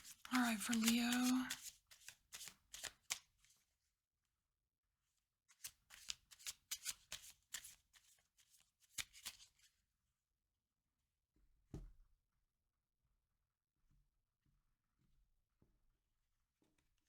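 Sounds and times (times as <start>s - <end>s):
cards being shuffled: 0.0s - 3.3s, 5.5s - 9.6s.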